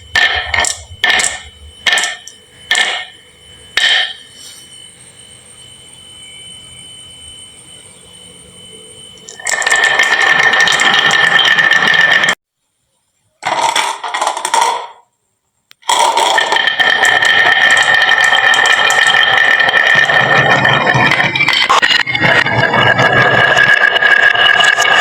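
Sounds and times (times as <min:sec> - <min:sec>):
steady ringing tone: 0:00.0 - 0:12.4, 0:16.2 - 0:25.0
marbles rattling down wooden run: 0:00.2 - 0:03.1, 0:09.3 - 0:12.4, 0:15.9 - 0:25.0.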